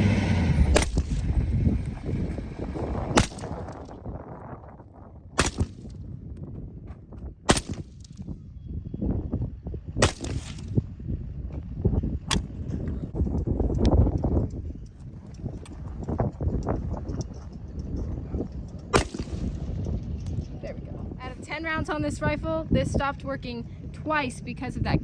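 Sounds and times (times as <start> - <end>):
rifle shots: 0.7 - 1.4, 3.1 - 3.8, 5.4 - 6.0, 7.5 - 8.2, 10.0 - 10.8, 18.9 - 19.7.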